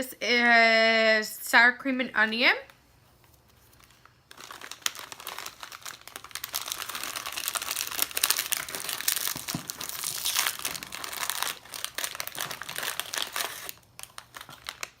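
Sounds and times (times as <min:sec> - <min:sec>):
plastic snack packet crinkling: 0:03.3 - 0:15.0.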